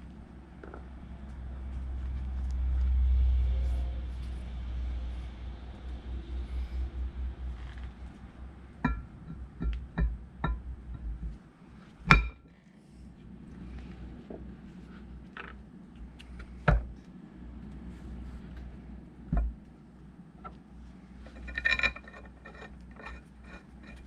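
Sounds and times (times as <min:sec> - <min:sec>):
metal clanks: 0:12.1 - 0:12.5, 0:21.2 - 0:24.0.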